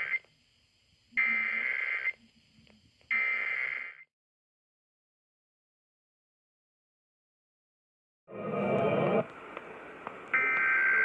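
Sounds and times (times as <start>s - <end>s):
digital data tone bursts: 0.0s - 0.2s, 1.2s - 2.2s, 3.1s - 4.0s.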